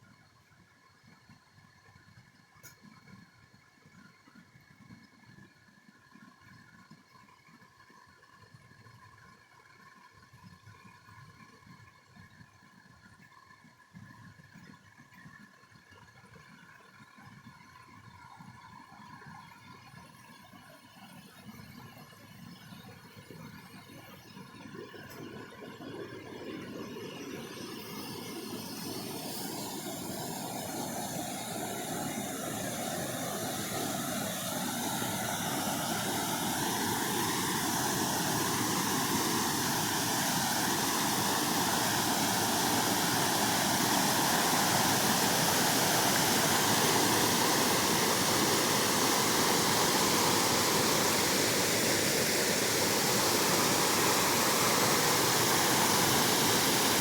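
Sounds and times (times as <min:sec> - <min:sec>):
waterfall rushing: 0:27.0 - 0:57.0.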